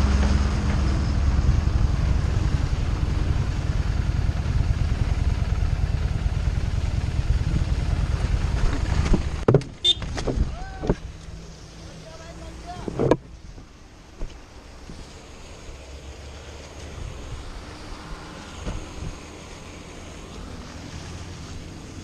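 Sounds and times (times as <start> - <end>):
motorcycle engine rumbling: 0.0 - 16.1.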